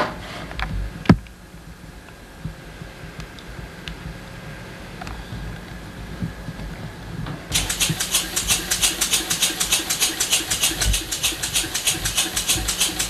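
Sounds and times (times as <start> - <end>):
model steam engine chuffing: 7.5 - 13.0.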